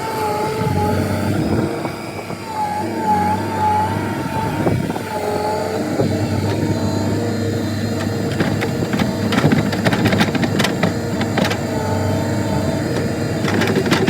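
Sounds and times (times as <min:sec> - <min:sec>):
machine engine whining: 0:00.0 - 0:14.0
clattering knocks: 0:07.9 - 0:14.0.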